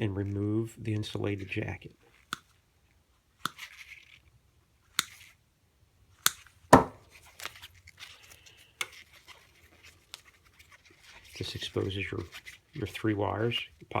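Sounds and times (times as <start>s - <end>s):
cord rubbing and scraping: 3.4s - 4.3s, 7.0s - 14.0s.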